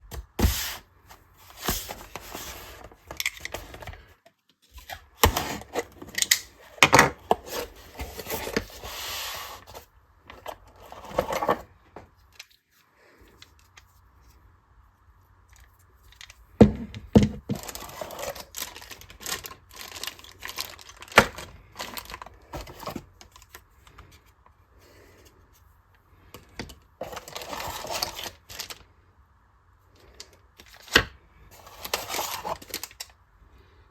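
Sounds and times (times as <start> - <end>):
packaging tearing and crinkling: 17.5 - 23.6, 27.0 - 28.8, 31.6 - 33.1.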